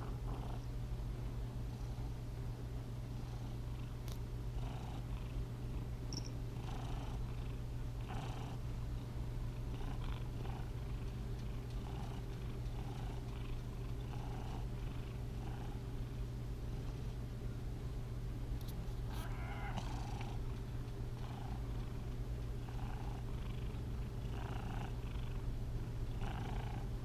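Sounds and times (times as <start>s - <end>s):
cat purring: 6.6s - 16.0s, 19.1s - 25.5s, 26.1s - 27.0s.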